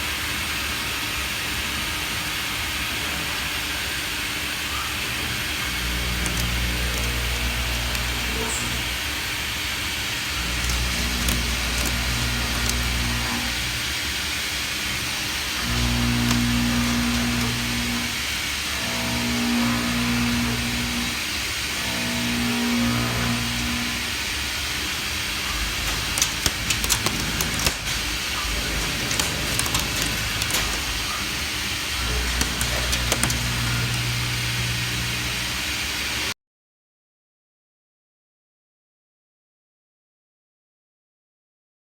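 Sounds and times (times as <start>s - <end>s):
machining centre hissing: 1.5s - 36.3s
low machine hum: 4.7s - 36.3s.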